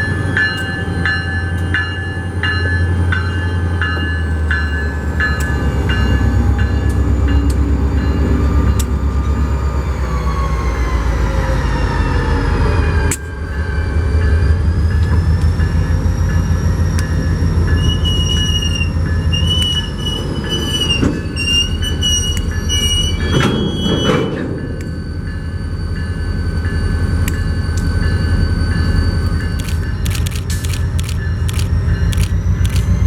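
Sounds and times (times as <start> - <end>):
train rumbling past: 0.0 - 33.0
wheel squeal: 17.3 - 26.4.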